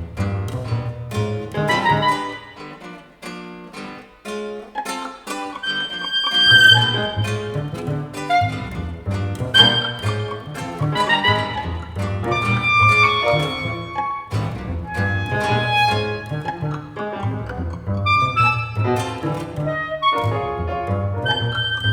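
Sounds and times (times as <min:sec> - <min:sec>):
violin: 0:00.0 - 0:03.0, 0:04.8 - 0:21.9
guitar: 0:00.0 - 0:21.9
clarinet: 0:00.2 - 0:03.0, 0:04.8 - 0:21.9
piano: 0:05.5 - 0:21.9
double bass repeated low notes: 0:14.5 - 0:21.9.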